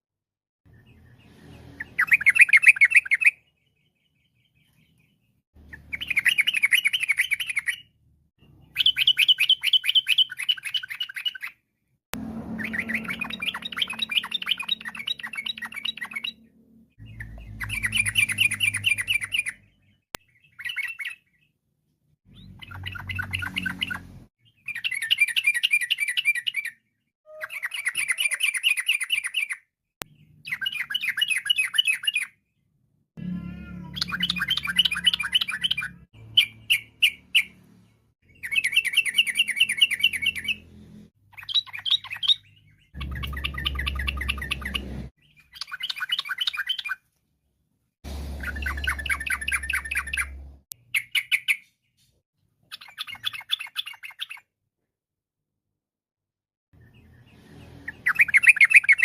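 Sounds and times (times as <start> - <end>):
bird chattering song: 0.7 - 11.6, 12.5 - 21.6, 22.3 - 32.4, 33.8 - 40.7, 41.3 - 47.0, 48.4 - 52.0, 52.7 - 54.5, 56.8 - 59.0.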